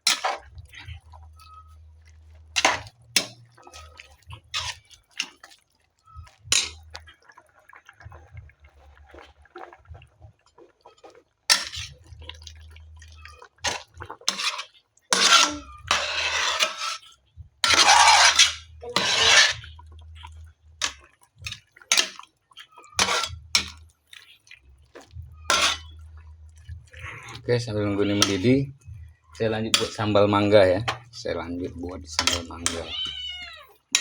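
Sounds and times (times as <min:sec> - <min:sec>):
utensils clattering on pot: 0:00.0 - 0:01.0, 0:02.6 - 0:03.9, 0:06.5 - 0:06.8, 0:11.5 - 0:12.1, 0:13.6 - 0:19.7, 0:20.8 - 0:22.2, 0:23.0 - 0:23.8, 0:25.5 - 0:26.0, 0:27.8 - 0:28.6, 0:29.6 - 0:31.2, 0:31.9 - 0:32.9.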